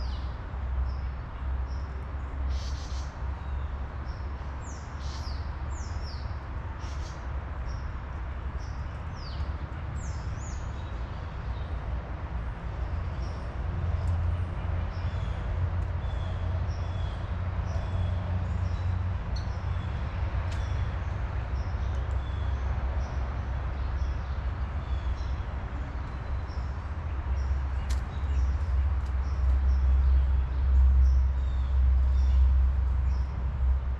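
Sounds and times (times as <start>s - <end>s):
small birds chirping: 12.8s - 33.4s.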